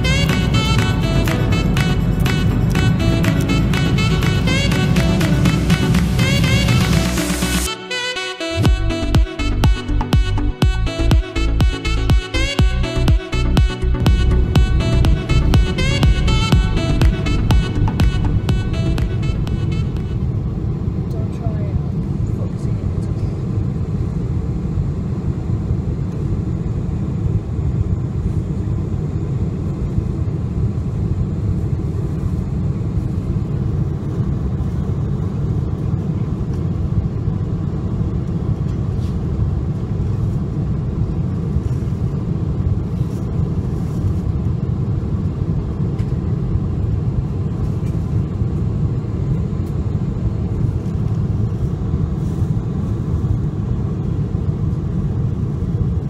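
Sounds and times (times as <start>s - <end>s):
airplane cabin rumble: 0.0s - 56.0s.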